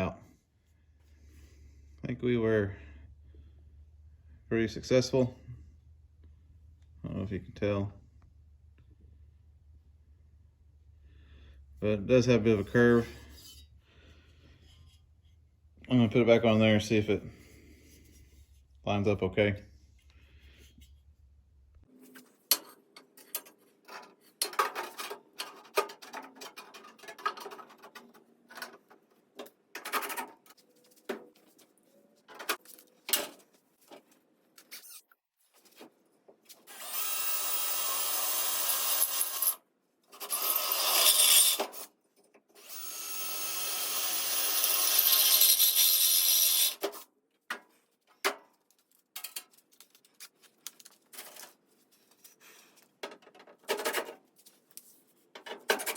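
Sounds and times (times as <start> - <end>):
metal parts clattering: 23.2 - 28.8
power drill drilling sheet steel: 36.7 - 39.6, 40.2 - 41.8, 42.6 - 46.8.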